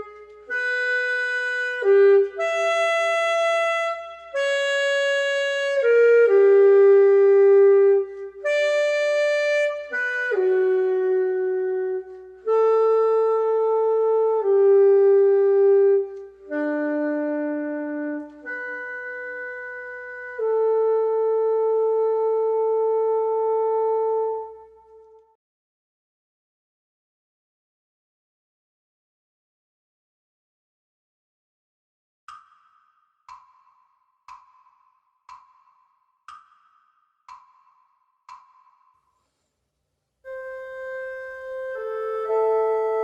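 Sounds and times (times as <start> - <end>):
reedy wind instrument melody: 0.0 - 25.4, 40.3 - 43.0.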